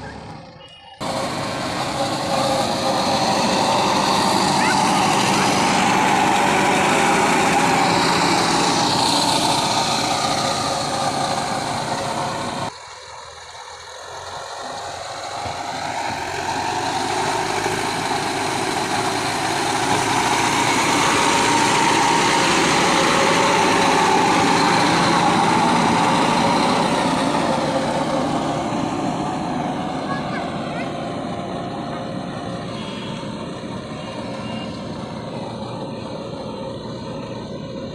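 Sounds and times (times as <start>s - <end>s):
backhoe loader diesel engine running: 0.0s - 37.9s.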